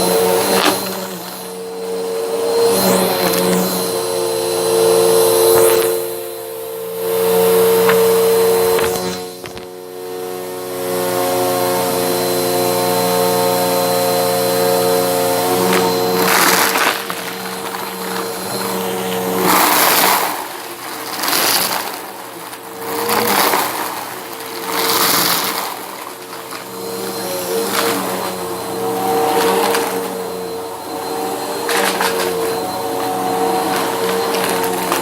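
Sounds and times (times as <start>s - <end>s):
vacuum cleaner motor hum: 0.0s - 35.0s
brushroll crunching debris: 15.6s - 28.0s.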